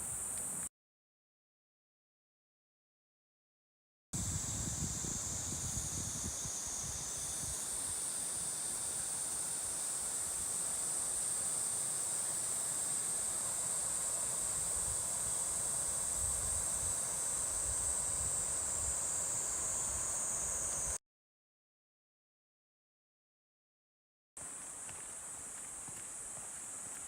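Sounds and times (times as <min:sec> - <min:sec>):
insect chorus buzzing: 0:00.0 - 0:00.7, 0:04.2 - 0:21.0, 0:24.4 - 0:27.0.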